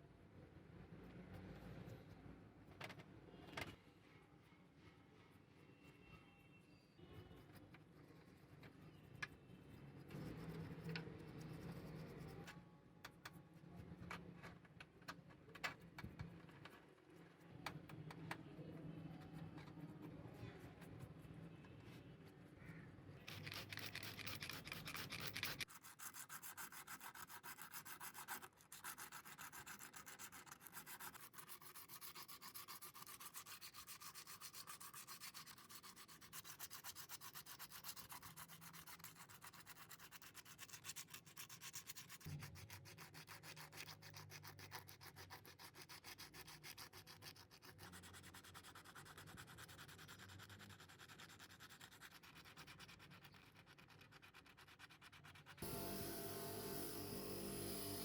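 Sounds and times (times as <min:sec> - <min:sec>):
hand sanding strokes: 0:23.3 - 0:42.3.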